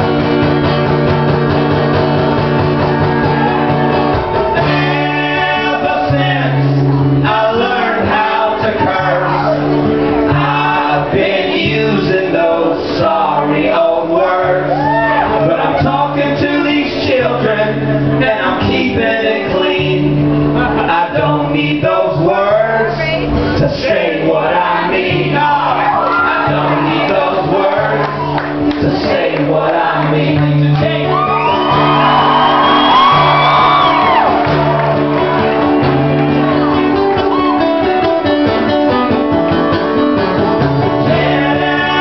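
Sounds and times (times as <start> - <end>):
live band music: 0.0 - 14.3, 15.0 - 42.0
men singing: 4.4 - 34.3, 40.9 - 42.0.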